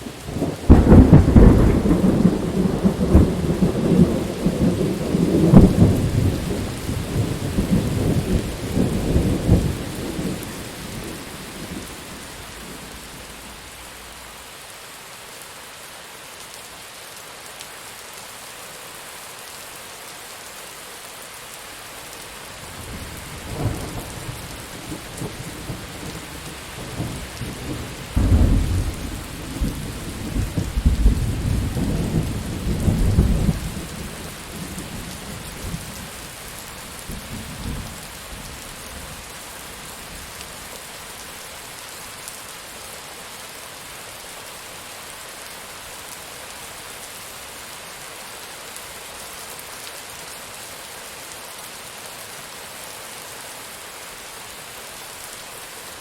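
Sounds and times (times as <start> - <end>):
heavy rain: 0.0 - 56.0
thunder rumbling: 0.2 - 14.3, 22.7 - 36.0.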